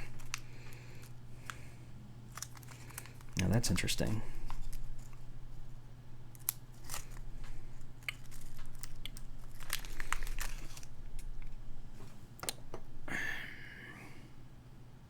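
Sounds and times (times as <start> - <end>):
small parts clicking and tapping: 6.3 - 11.6.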